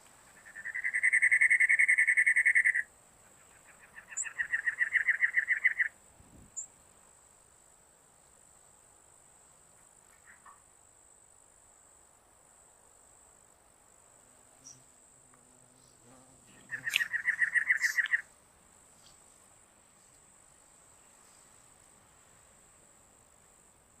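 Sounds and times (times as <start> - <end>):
high insect buzz: 0.2 - 24.0
wren calling harsh chugging notes: 0.4 - 2.9, 16.6 - 18.2.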